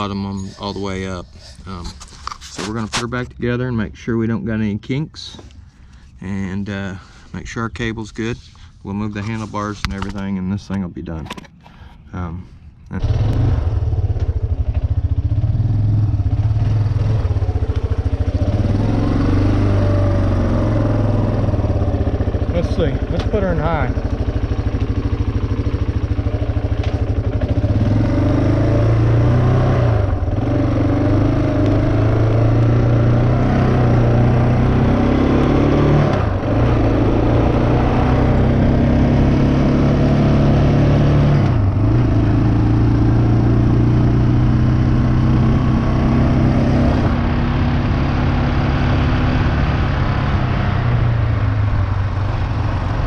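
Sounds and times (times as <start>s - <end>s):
engine revving: 12.9s - 53.0s.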